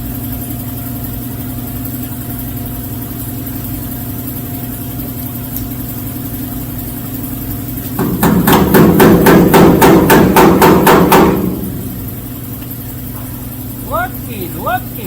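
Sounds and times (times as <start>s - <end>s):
hammer blows on sheet steel: 8.0s - 11.9s.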